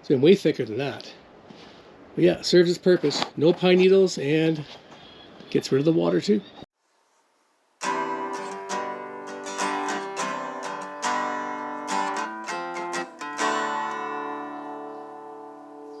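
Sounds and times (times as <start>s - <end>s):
strummed acoustic guitar: 7.8s - 16.0s.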